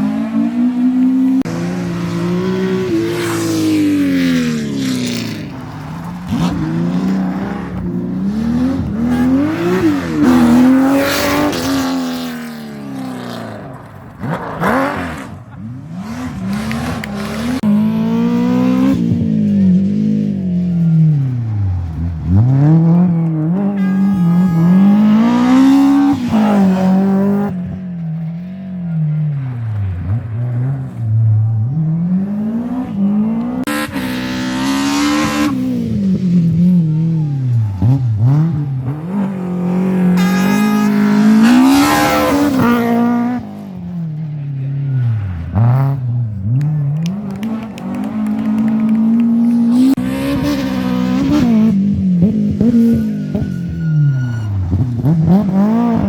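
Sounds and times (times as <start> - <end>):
rally car engines revving: 0.0 - 56.0
tyre squeal: 52.3 - 56.0.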